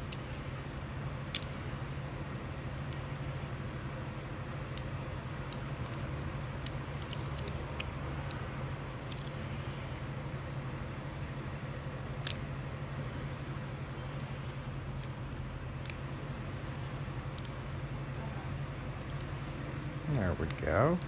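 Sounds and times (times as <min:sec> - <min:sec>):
steady low hum: 0:00.0 - 0:21.0
small metal clicks and taps: 0:04.7 - 0:08.4.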